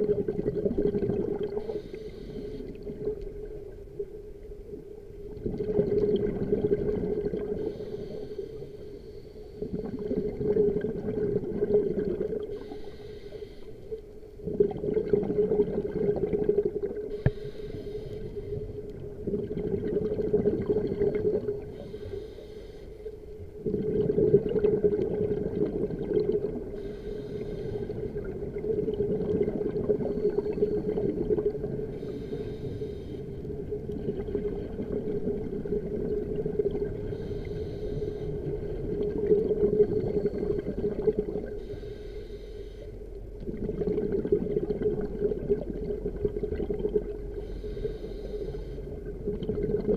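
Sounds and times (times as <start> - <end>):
exhaled bubbles rumbling: 0.0 - 2.0, 2.6 - 7.8, 9.6 - 12.8, 14.4 - 21.9, 23.3 - 41.6, 43.1 - 48.0, 48.9 - 49.9
regulator inhale hiss: 1.5 - 2.8, 7.5 - 9.9, 12.5 - 14.0, 17.1 - 18.8, 21.6 - 23.4, 26.7 - 28.0, 31.9 - 33.6, 37.0 - 38.5, 41.5 - 43.1, 47.3 - 49.0
steady hum: 16.4 - 43.9, 45.0 - 49.9.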